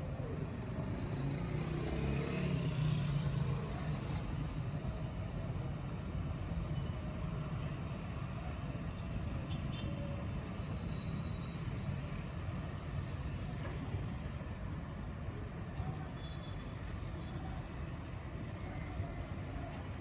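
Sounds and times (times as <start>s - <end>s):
road traffic rumble: 0.0s - 5.2s.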